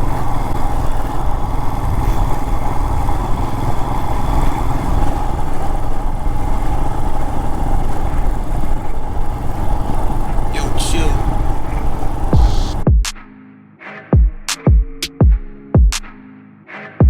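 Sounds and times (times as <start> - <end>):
motorcycle engine running: 0.0 - 12.9.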